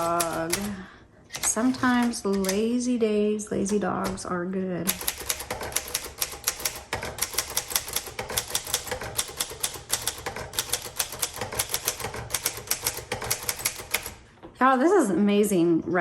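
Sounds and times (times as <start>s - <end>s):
typewriter keys clacking: 0.0s - 2.8s, 4.9s - 14.2s.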